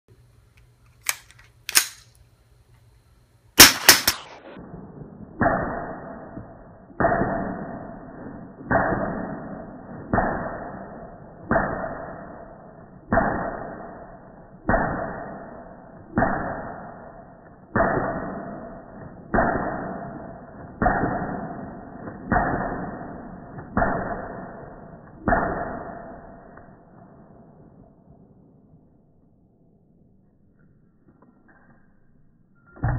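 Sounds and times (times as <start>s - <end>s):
slowed-down gunshot booms: 3.6s - 29.9s.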